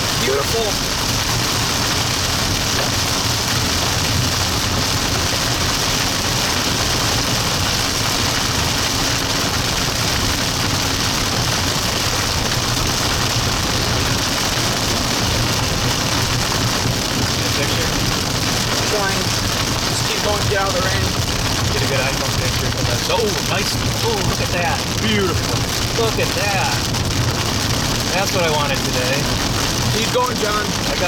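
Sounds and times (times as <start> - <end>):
engine and road rumble: 0.0 - 31.0
rain beating on a car: 0.0 - 31.0.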